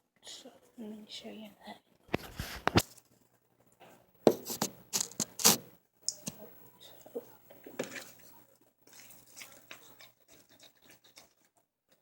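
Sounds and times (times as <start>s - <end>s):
rustling and scraping of handling: 2.1s - 5.6s, 6.8s - 12.0s.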